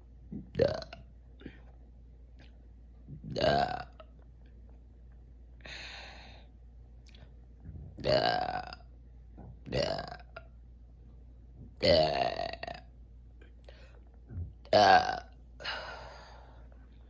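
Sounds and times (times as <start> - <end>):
person burping: 0.4 - 1.0, 3.2 - 4.1, 8.0 - 8.9, 9.7 - 10.4, 11.8 - 12.9, 14.6 - 16.0.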